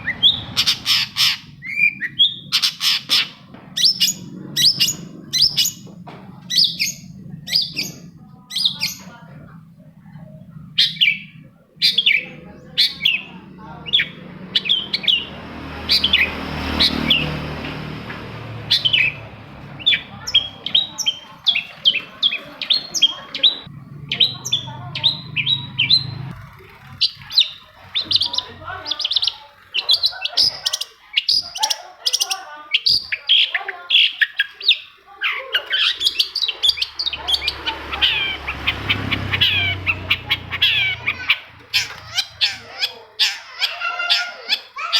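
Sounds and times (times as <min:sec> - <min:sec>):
low hum: 0:00.0 - 0:30.2
bird chirping: 0:00.0 - 0:44.0.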